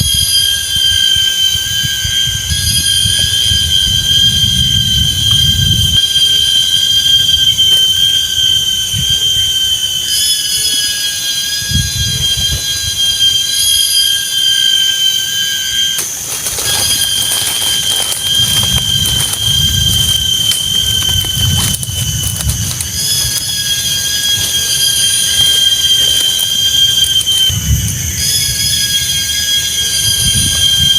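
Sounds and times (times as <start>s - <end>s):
forest insects droning: 0.0s - 30.9s
low rumbling: 16.2s - 29.2s.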